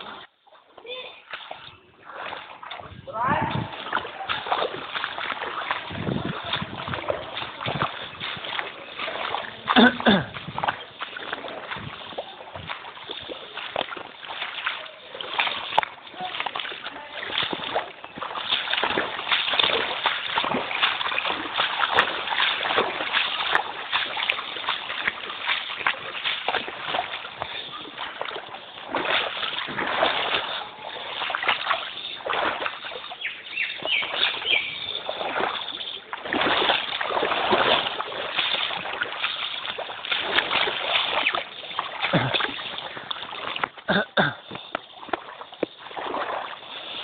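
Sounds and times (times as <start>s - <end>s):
floodwater splashing and sloshing: 0.0s - 47.0s.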